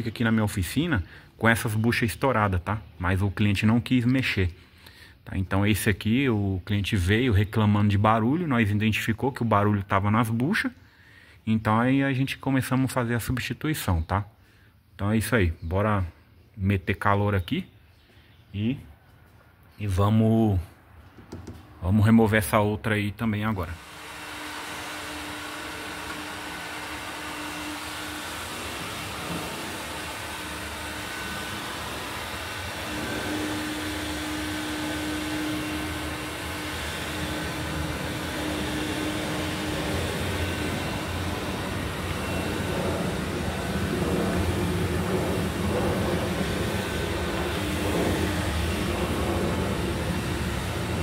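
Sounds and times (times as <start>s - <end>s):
heat gun blowing: 23.7s - 51.0s.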